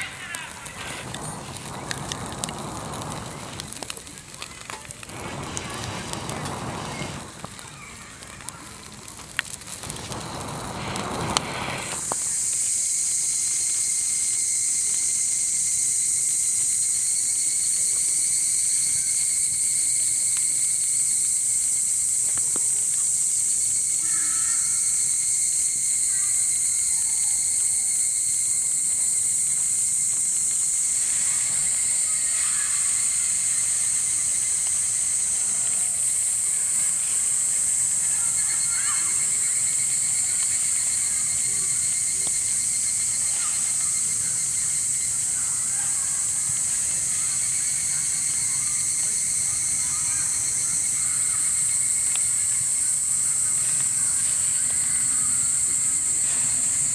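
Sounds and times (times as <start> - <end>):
shrill chorus of night insects: 0.0 - 56.9.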